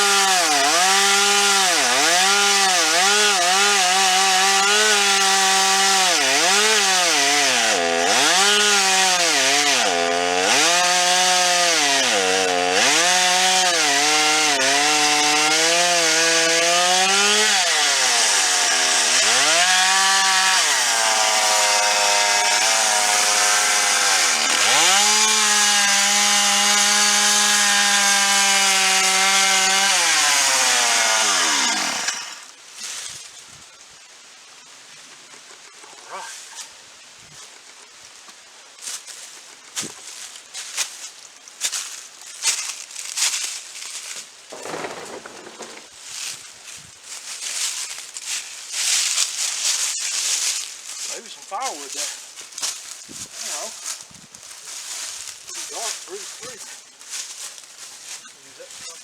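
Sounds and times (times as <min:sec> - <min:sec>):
chainsaw cutting wood: 0:00.0 - 0:32.6, 0:44.5 - 0:46.4.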